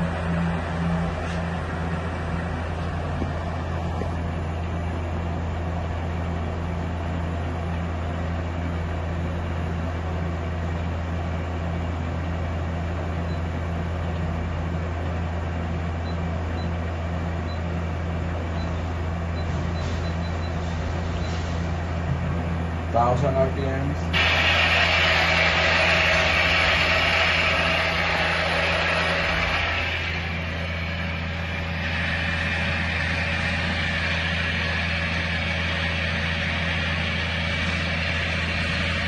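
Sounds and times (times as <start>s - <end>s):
lathe spindle humming: 24.0s - 39.0s.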